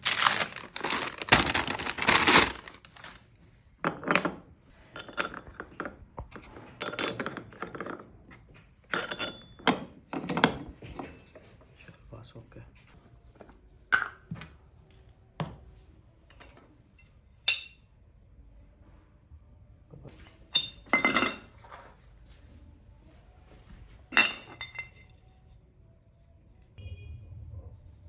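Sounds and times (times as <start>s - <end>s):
metal tools clinking: 3.8s - 12.0s, 20.2s - 21.6s, 24.1s - 25.1s.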